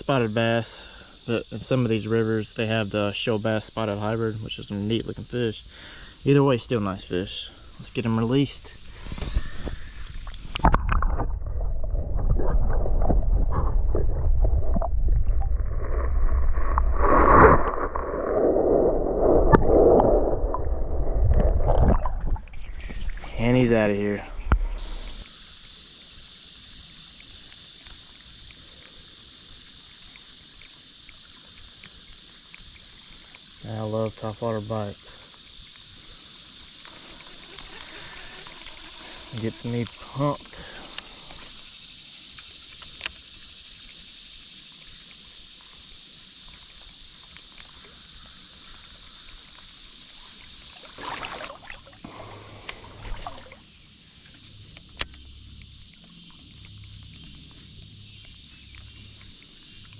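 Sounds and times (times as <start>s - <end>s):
steady high hiss: 0.0s - 10.9s, 23.4s - 59.9s
insects chirring: 0.0s - 59.9s
water splashing and sloshing: 4.9s - 18.7s, 19.3s - 23.7s, 34.8s - 59.9s
faint ticks: 24.5s - 50.9s, 52.4s - 53.5s, 54.1s - 59.9s
sharp clicks: 54.7s - 57.3s.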